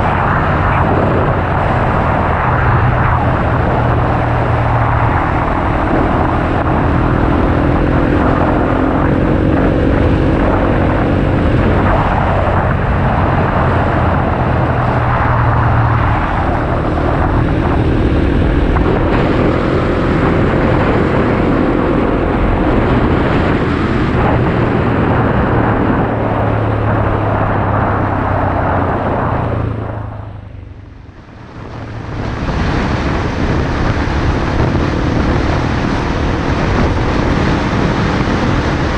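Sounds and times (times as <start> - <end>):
wind rush: 0.0 - 38.9
motorcycle engine running: 3.1 - 27.8.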